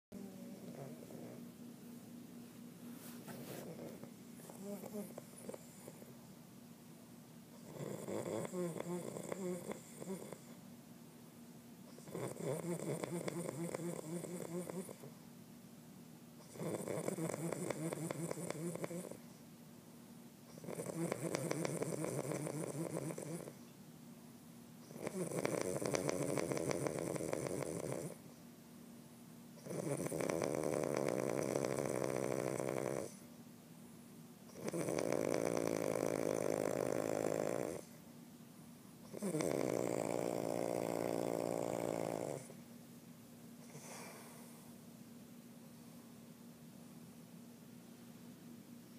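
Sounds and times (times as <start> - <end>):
quiet breathing: 0.1 - 6.4, 43.6 - 44.9
man snoring: 7.6 - 10.4, 12.0 - 15.0, 20.6 - 23.5, 24.9 - 28.1, 29.6 - 33.1, 34.6 - 37.9, 39.1 - 42.5.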